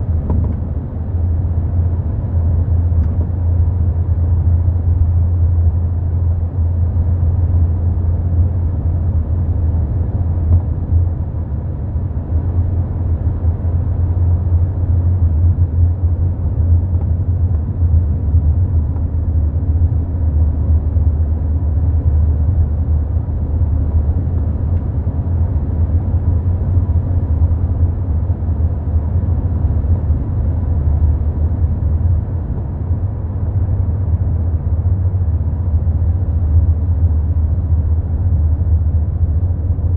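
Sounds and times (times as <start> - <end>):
car road rumble: 0.0 - 39.9.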